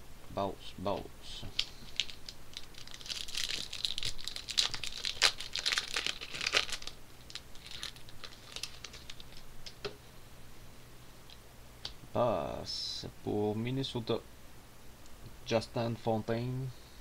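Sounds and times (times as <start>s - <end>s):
wrapper tearing and crinkling: 1.6s - 9.5s.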